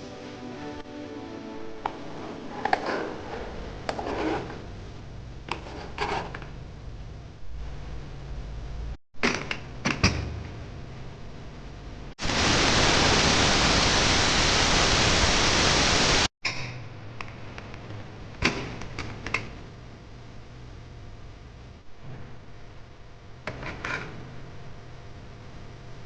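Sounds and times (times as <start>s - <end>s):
loud steady hiss: 12.2s - 16.3s.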